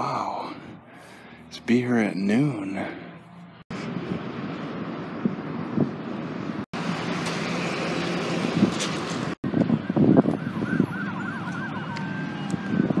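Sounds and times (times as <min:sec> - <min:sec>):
vehicle traffic: 0:00.0 - 0:13.0
emergency vehicle siren yelping: 0:09.4 - 0:13.0.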